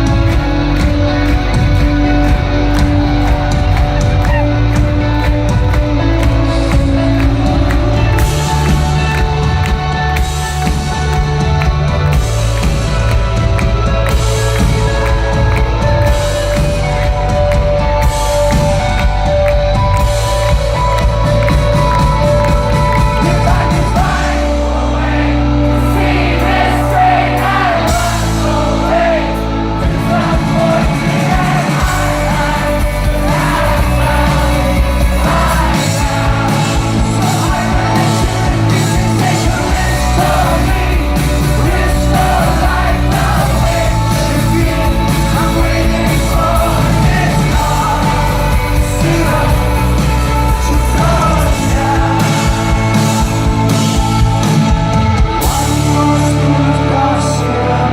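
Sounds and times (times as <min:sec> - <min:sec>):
rock band playing live: 0:00.0 - 0:57.9
man singing lead vocal: 0:22.7 - 0:57.9.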